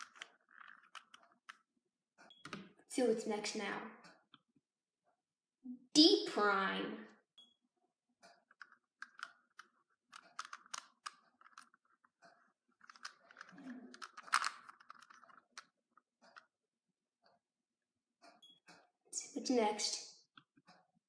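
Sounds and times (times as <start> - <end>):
puzzle cube clicking and twisting: 0.0 - 1.6, 8.5 - 16.5.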